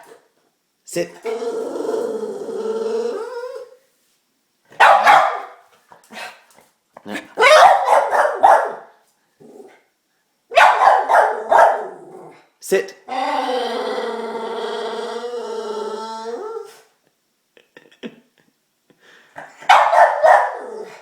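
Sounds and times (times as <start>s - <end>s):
dog whining: 1.2s - 3.8s
dog barking and yipping: 4.8s - 5.6s, 7.4s - 8.9s, 10.5s - 12.0s, 19.6s - 20.7s.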